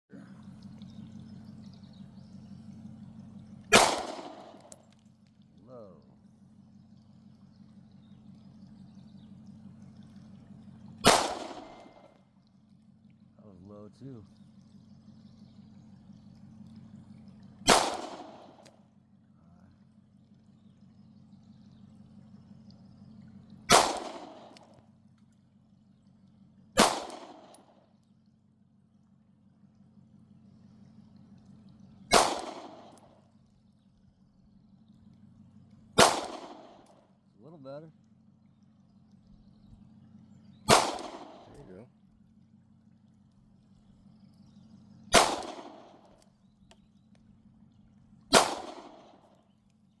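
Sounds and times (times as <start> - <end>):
pistol shots with echo: 3.7 - 4.8, 11.0 - 12.2, 17.7 - 18.7, 23.7 - 24.8, 26.8 - 27.7, 32.1 - 33.1, 36.0 - 36.9, 40.7 - 41.8, 45.1 - 46.2, 48.3 - 49.2.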